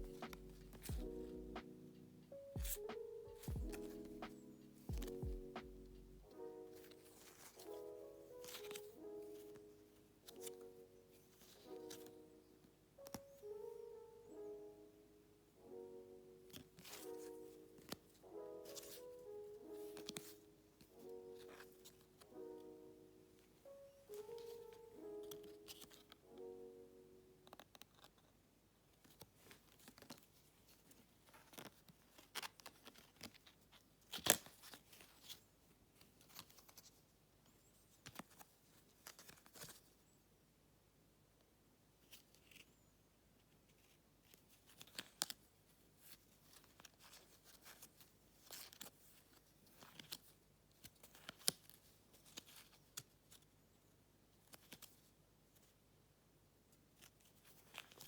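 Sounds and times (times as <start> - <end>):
sharp clicks and taps: 0.0 - 1.8.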